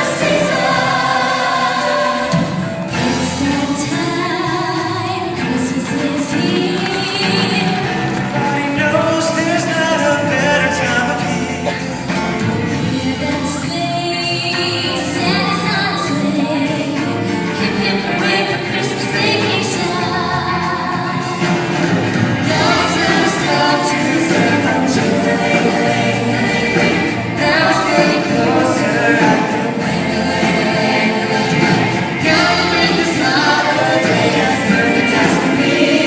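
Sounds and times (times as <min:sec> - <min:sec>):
choir-like voices: 0:00.0 - 0:36.0
song with singing and backing: 0:00.0 - 0:36.0.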